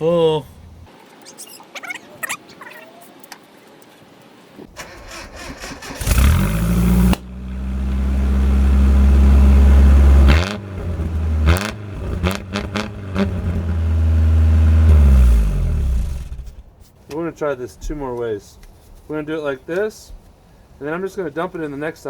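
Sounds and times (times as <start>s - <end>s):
truck engine cranking: 4.7s - 16.8s
loud truck engine idling and revving: 5.0s - 16.7s.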